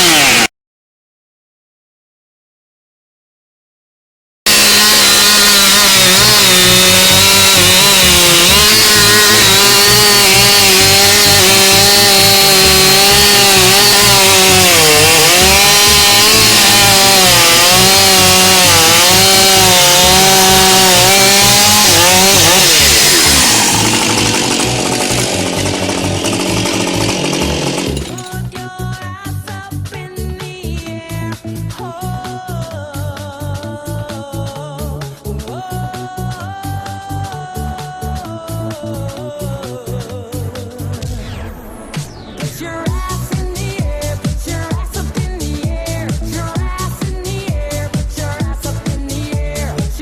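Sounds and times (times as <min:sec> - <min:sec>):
chainsaw cutting wood: 0:00.0 - 0:00.5, 0:04.5 - 0:28.7.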